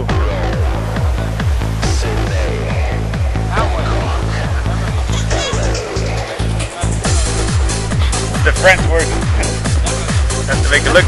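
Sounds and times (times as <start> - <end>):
electronic dance music: 0.0 - 11.0.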